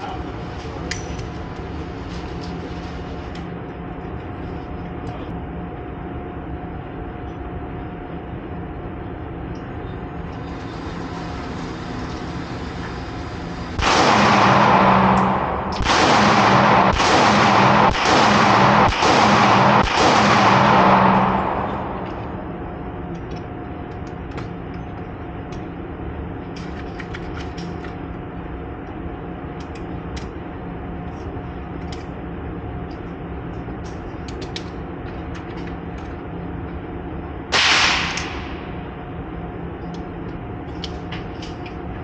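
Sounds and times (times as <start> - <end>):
steady mechanical hum: 0.0 - 42.0
gunshot with echo: 13.8 - 22.6, 37.5 - 38.7.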